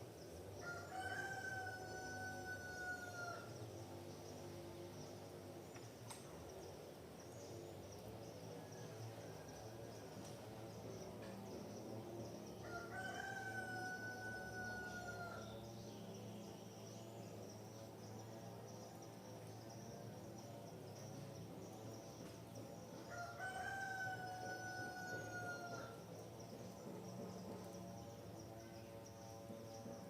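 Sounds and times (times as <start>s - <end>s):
insect chorus: 0.0s - 30.0s
rooster crowing: 0.6s - 3.5s, 12.6s - 15.5s, 23.1s - 26.0s.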